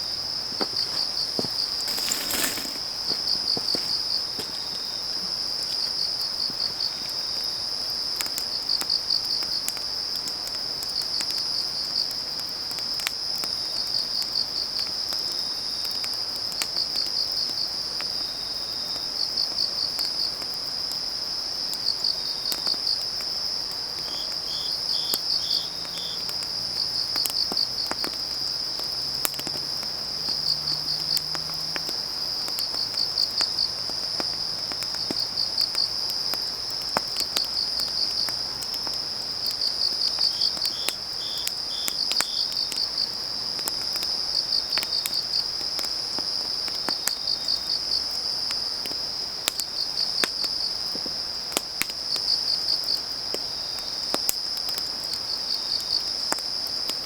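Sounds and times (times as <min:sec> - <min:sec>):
cricket chirping in pulses: 0:00.0 - 0:09.4, 0:21.5 - 0:48.2
crickets trilling: 0:00.0 - 0:57.0
firewood crackling and popping: 0:00.1 - 0:57.0.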